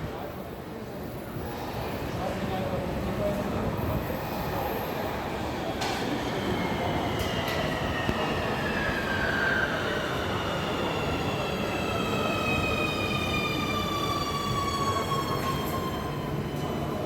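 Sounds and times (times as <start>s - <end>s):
subway train pulling in: 0.0s - 17.0s.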